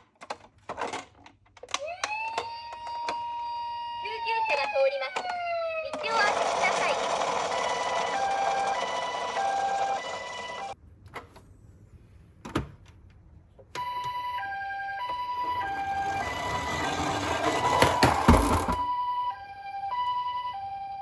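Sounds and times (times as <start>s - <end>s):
two-tone ambulance siren: 1.7s - 10.8s, 13.8s - 21.0s.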